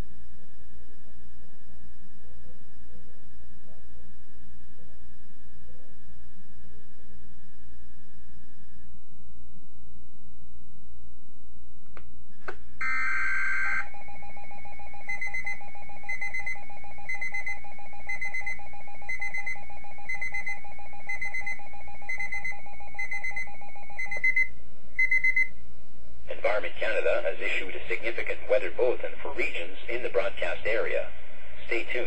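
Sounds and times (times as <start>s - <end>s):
warbling digital data tones: 12.8s - 25.5s
higher beep: 15.0s - 25.5s.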